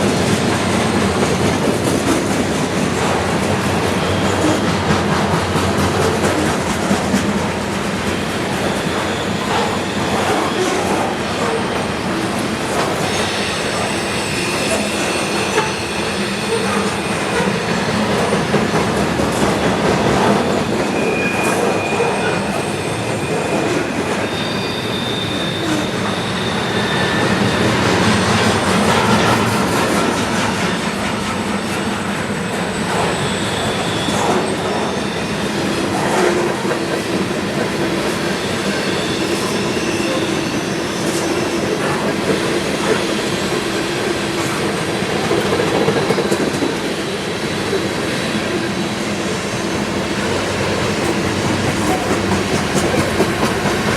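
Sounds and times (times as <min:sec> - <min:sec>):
freight train rumbling past: 0:00.0 - 0:53.9
high wheel squeals: 0:08.2 - 0:11.7, 0:12.8 - 0:18.9, 0:20.2 - 0:30.8, 0:31.4 - 0:44.8
rail joint clicks and knocks: 0:50.2 - 0:53.9.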